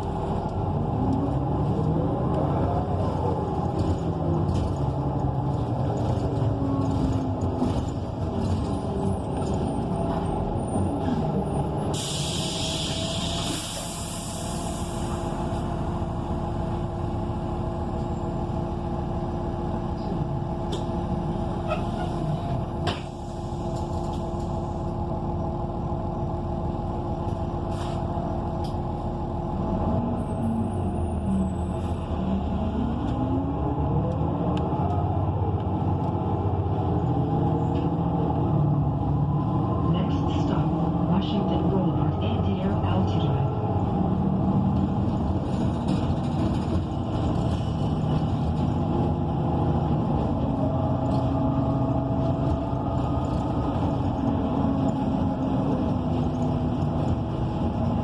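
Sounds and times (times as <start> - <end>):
bus engine: 0.0 - 58.0
compressed air hiss: 12.0 - 15.1.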